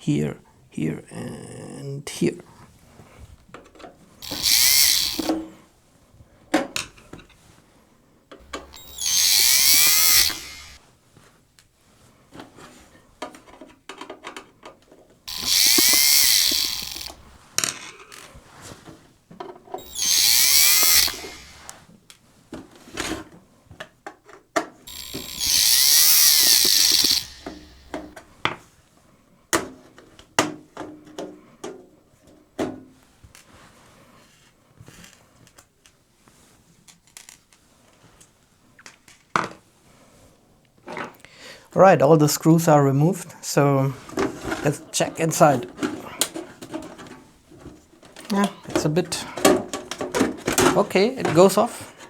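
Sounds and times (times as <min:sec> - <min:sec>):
electric screwdriver whine: 0:04.2 - 0:05.4, 0:08.4 - 0:10.8, 0:15.3 - 0:17.4, 0:19.8 - 0:21.7, 0:24.9 - 0:28.1.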